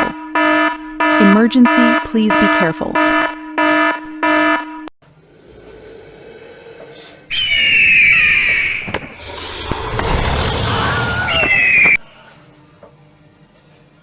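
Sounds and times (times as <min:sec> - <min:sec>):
pulsing alarm tone: 0:00.0 - 0:04.9
high-pitched squeal sliding down: 0:07.3 - 0:12.0.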